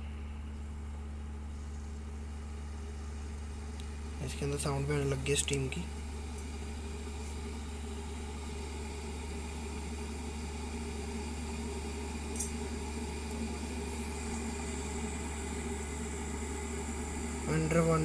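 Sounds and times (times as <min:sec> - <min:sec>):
constant low hum: 0:00.0 - 0:18.0
kettle water steaming: 0:05.8 - 0:18.0.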